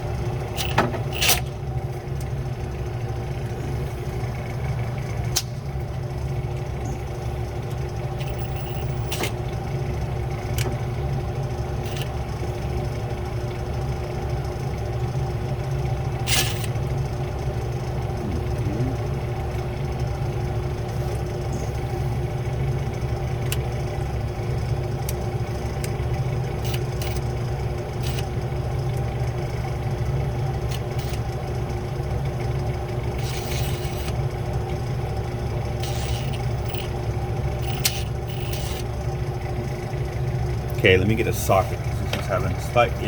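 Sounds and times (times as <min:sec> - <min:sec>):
machine hum: 0:00.0 - 0:43.0
scrapes of metal parts: 0:00.5 - 0:01.4, 0:08.2 - 0:09.3, 0:11.8 - 0:12.1, 0:16.3 - 0:16.7, 0:28.0 - 0:28.3, 0:30.7 - 0:31.2, 0:33.2 - 0:34.2, 0:35.8 - 0:37.0, 0:37.6 - 0:38.9
light clicks of metal parts: 0:26.6 - 0:27.2, 0:28.0 - 0:28.3.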